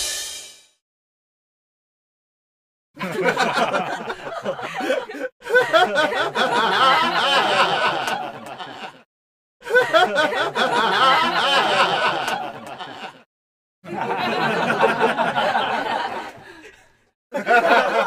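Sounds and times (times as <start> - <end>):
laughter sound effects: 3.0 - 13.3, 13.9 - 18.0.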